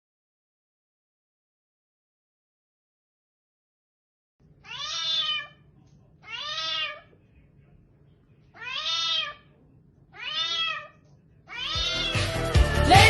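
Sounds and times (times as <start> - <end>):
cat meowing: 4.6 - 7.1, 8.6 - 9.5, 10.1 - 12.5.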